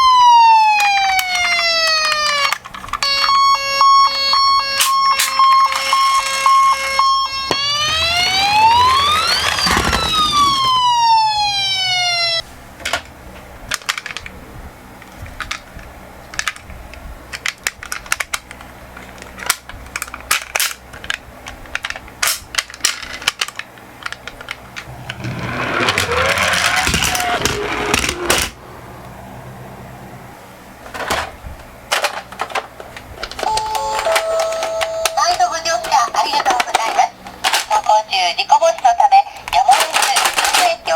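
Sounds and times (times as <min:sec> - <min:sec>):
ambulance siren wailing: 0:00.0 - 0:12.4, 0:25.2 - 0:28.6, 0:33.4 - 0:36.1
toy cars rolling and clattering: 0:04.8 - 0:06.7, 0:07.6 - 0:11.2, 0:13.7 - 0:14.4, 0:16.3 - 0:16.7, 0:17.3 - 0:28.6, 0:31.9 - 0:40.9
loud rushing burst: 0:07.5 - 0:12.1.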